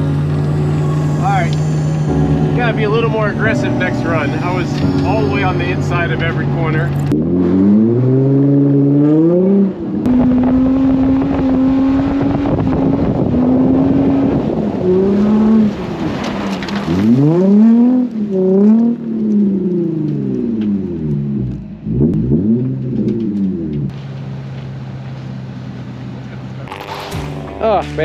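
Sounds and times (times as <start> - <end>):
car engine revving hard: 0.0 - 20.0.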